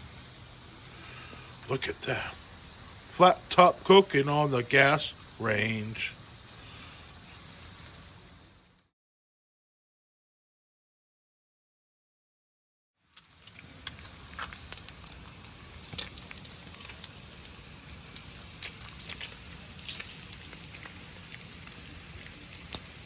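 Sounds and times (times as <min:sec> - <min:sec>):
bacon sizzling on a griddle: 0:00.0 - 0:08.9, 0:13.0 - 0:23.0.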